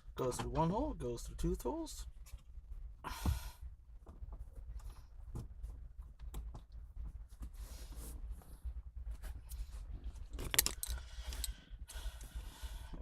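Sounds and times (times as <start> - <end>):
breathy exhale: 10.9 - 13.0.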